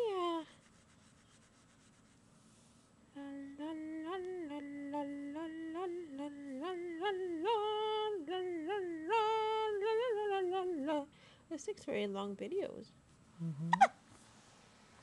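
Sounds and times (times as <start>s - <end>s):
woman humming a tune: 3.1s - 11.0s, 13.4s - 13.9s.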